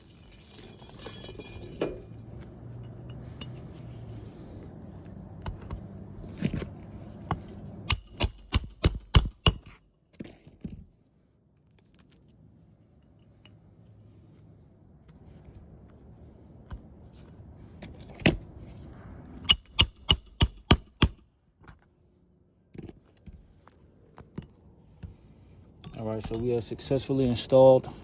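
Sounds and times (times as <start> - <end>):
hammer striking nail: 7.3 - 9.8, 19.5 - 21.2.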